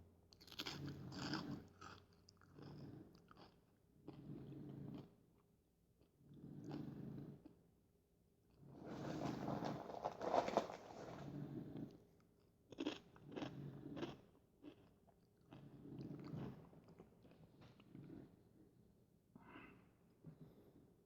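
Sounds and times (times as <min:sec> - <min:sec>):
corn chips crunching: 0:00.4 - 0:02.6, 0:09.2 - 0:11.2.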